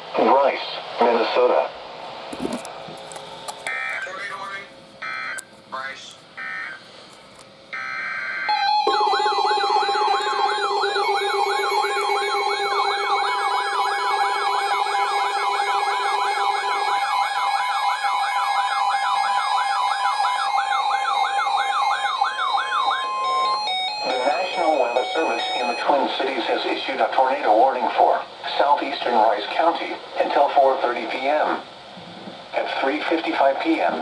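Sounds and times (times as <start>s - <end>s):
warbling siren alert tone: 6.4s - 6.8s, 7.8s - 26.0s
steady high tone: 7.7s - 26.6s.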